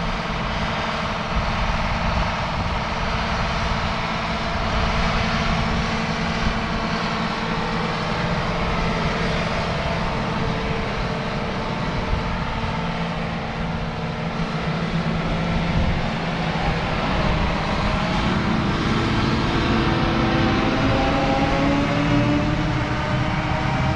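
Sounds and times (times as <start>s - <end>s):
diesel engines droning: 0.0s - 23.9s.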